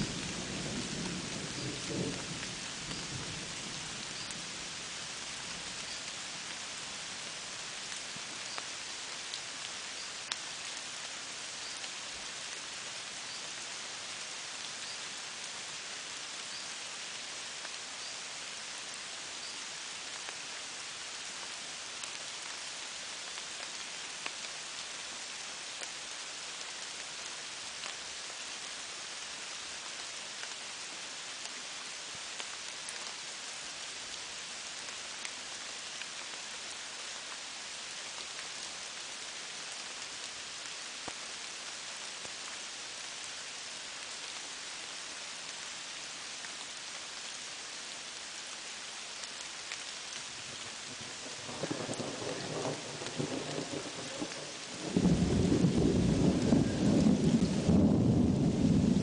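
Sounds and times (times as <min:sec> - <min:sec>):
steady rain hissing: 0:00.0 - 0:59.0
raindrop ticks: 0:07.9 - 0:08.7, 0:49.2 - 0:57.8.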